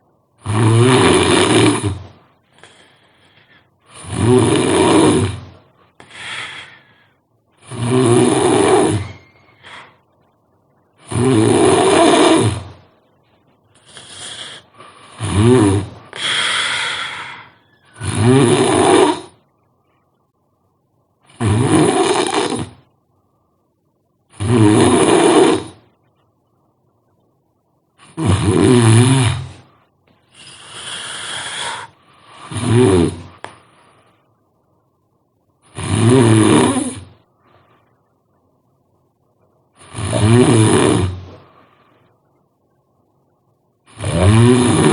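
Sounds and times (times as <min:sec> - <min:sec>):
person snoring: 0:00.4 - 0:02.9, 0:03.8 - 0:10.0, 0:11.0 - 0:12.8, 0:13.8 - 0:19.4, 0:21.3 - 0:22.8, 0:24.3 - 0:25.8, 0:28.0 - 0:29.7, 0:30.3 - 0:33.4, 0:35.6 - 0:37.2, 0:39.8 - 0:41.4, 0:43.9 - 0:44.9
breathy out-breath: 0:02.4 - 0:03.9, 0:06.0 - 0:07.3, 0:09.0 - 0:10.1, 0:16.1 - 0:18.0.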